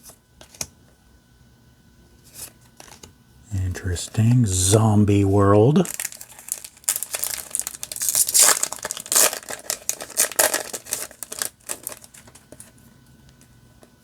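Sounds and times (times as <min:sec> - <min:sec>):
foil wrapper crinkling: 0:05.9 - 0:12.8.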